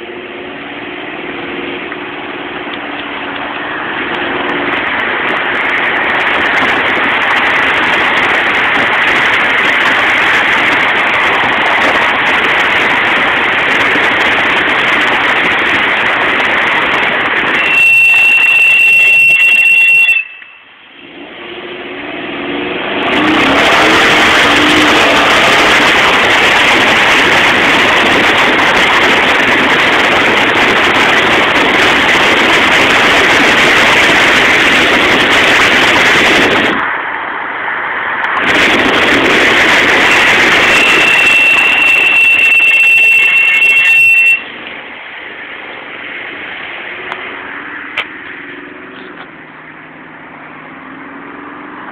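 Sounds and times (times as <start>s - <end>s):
car engine and road noise: 0.0s - 51.9s
high-pitched brake squeal: 17.4s - 20.7s, 40.0s - 44.6s.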